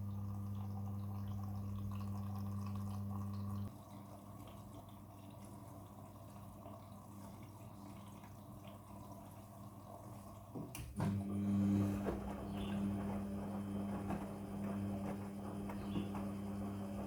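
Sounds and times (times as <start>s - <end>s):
water trickling and dripping: 0.0s - 10.7s
washing machine hum: 0.0s - 17.0s.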